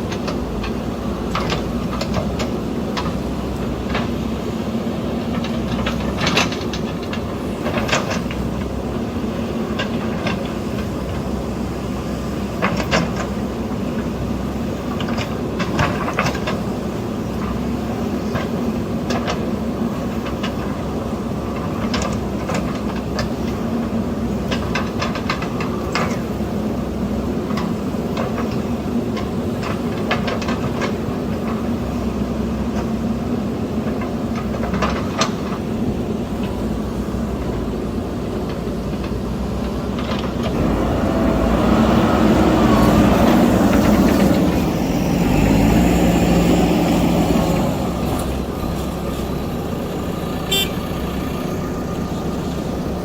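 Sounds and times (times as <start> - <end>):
diesel engine running: 0.0 - 53.0
machine clanks and knocks: 5.3 - 8.7.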